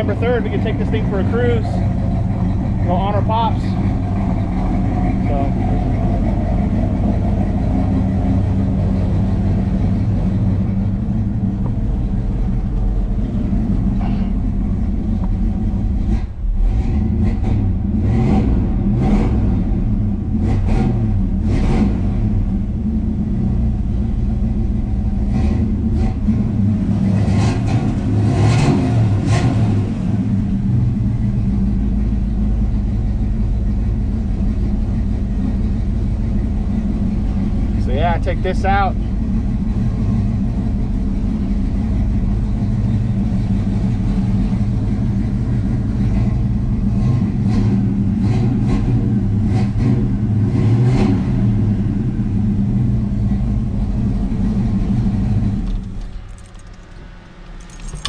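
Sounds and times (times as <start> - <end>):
car engine idling: 0.0 - 18.0, 29.1 - 48.2, 52.0 - 58.0
engine throttle blips: 0.0 - 50.5.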